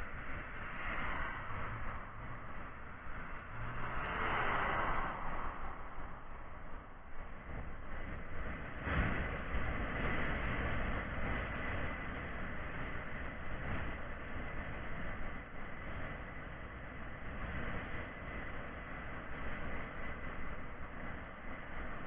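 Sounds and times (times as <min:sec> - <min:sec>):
rushing vehicle noise: 0:00.0 - 0:13.0
faint high whine: 0:00.0 - 0:22.0.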